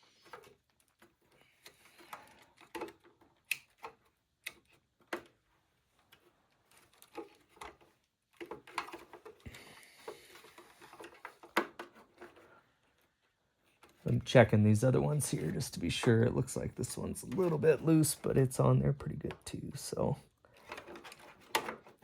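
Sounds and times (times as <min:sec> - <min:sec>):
small clicks and taps: 0:00.2 - 0:05.4.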